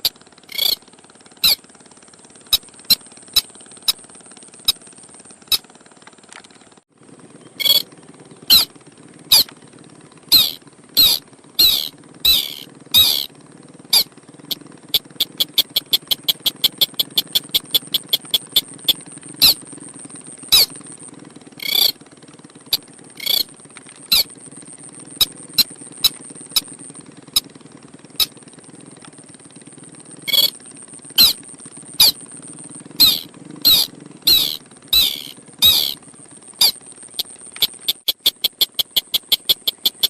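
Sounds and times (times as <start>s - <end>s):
crake bird calls: 0.0s - 0.8s, 1.4s - 1.6s, 2.5s - 4.0s, 7.4s - 8.7s, 9.3s - 9.5s, 10.3s - 13.3s, 13.9s - 19.6s, 20.4s - 20.8s, 21.6s - 22.0s, 22.7s - 23.5s, 24.1s - 24.4s, 30.3s - 30.6s, 31.2s - 32.2s, 33.0s - 36.0s, 36.6s - 40.0s
low hum: 0.0s - 1.6s, 10.3s - 13.3s, 13.9s - 22.0s.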